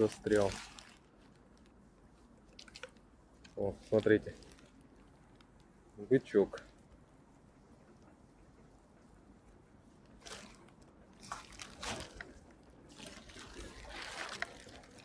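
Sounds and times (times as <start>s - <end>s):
bottle sloshing and scraping: 11.2s - 15.0s.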